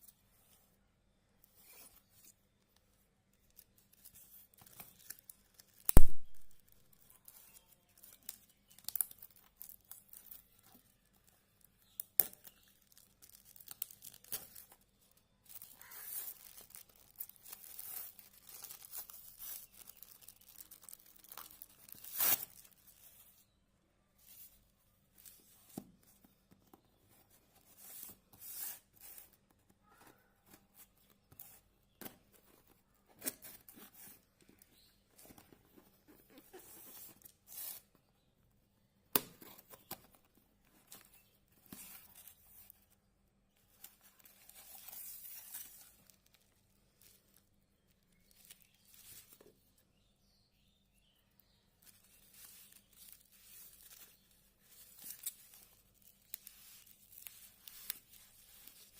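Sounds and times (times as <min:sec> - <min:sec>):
packaging rustling and tearing: 0:11.8 - 0:14.8, 0:15.4 - 0:23.3, 0:51.8 - 0:58.9.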